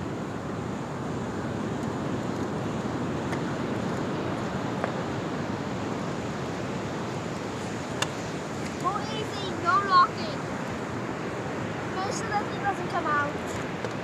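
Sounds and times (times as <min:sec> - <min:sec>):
wind: 0:00.0 - 0:14.0.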